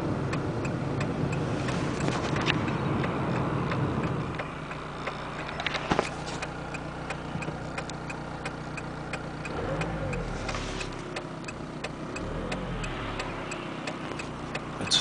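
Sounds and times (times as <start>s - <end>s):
diesel engine idling: 0.0s - 15.0s
engine ticking: 0.0s - 15.0s
engine revving: 6.7s - 15.0s.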